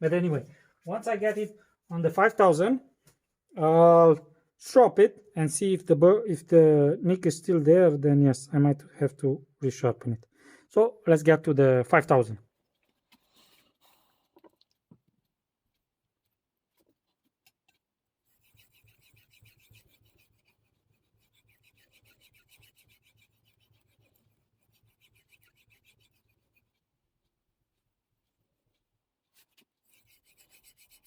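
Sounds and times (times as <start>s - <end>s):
knife scraping on whetstone: 18.3s - 26.7s, 29.4s - 31.0s.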